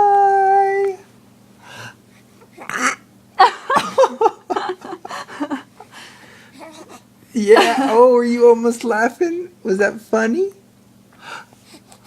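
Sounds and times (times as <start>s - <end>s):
baby vocalizing: 2.4s - 3.1s, 6.6s - 7.1s.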